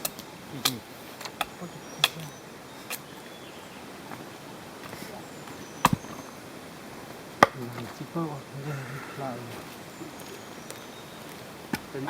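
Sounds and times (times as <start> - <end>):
firewood cracking and knocking: 4.0 - 8.3, 9.5 - 12.0.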